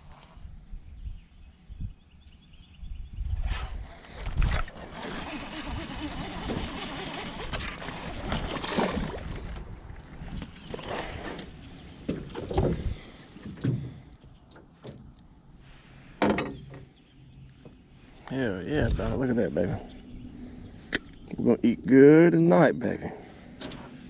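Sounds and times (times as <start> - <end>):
water splashing: 4.7 - 10.9.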